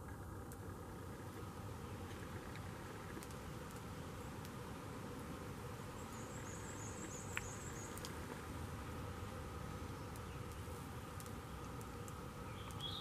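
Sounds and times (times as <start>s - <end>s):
steady low hiss: 0.0s - 13.0s.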